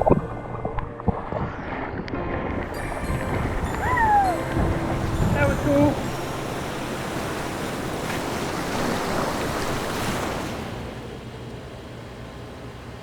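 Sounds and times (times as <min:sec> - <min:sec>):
wind on microphone: 0:00.0 - 0:10.8
ocean surf washing on beach: 0:02.6 - 0:11.5.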